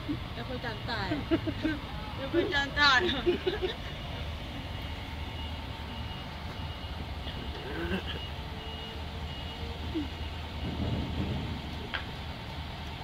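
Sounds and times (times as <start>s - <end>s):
low engine rumble: 0.0s - 13.0s
reversing alarm beeping: 2.2s - 11.9s.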